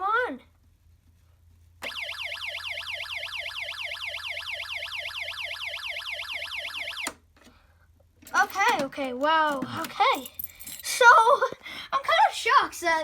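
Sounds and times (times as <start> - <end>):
fire alarm sweeping tone: 1.8 - 7.2.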